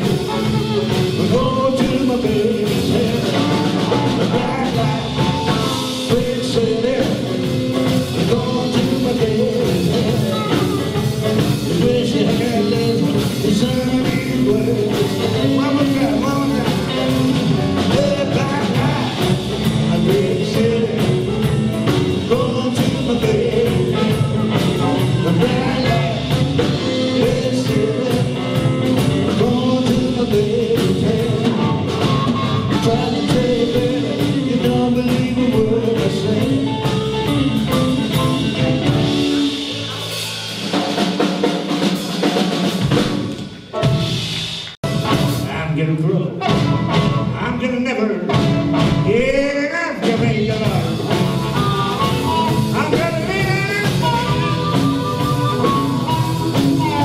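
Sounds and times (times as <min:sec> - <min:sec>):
blues band playing live: 0:00.0 - 0:57.0.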